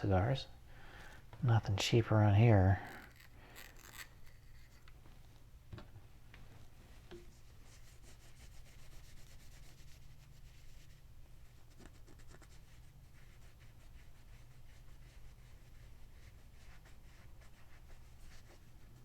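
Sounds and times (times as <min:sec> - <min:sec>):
low steady hum: 0:00.0 - 0:19.0
hands rubbing pocket knife: 0:02.9 - 0:05.0.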